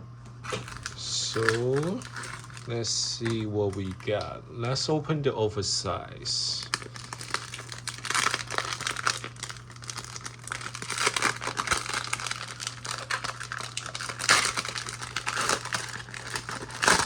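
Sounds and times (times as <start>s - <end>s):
wrapper crinkling and tearing: 0.4s - 4.4s, 6.5s - 17.0s.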